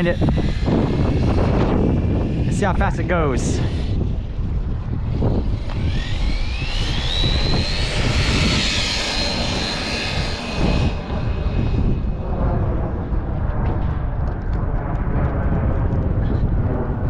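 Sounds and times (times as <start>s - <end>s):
wind on microphone: 0.0s - 17.0s
toy truck motor whining: 5.4s - 11.0s.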